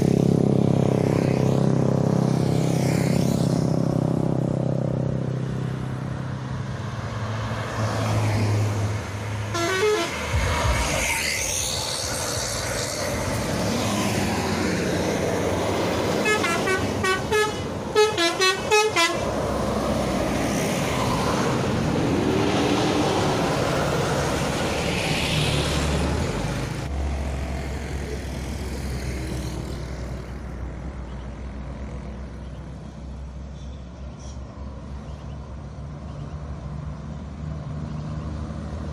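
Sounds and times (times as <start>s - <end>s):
bus engines running: 0.0s - 38.9s
passing traffic: 0.0s - 38.9s
musical bus horns: 9.4s - 10.4s, 16.1s - 19.4s.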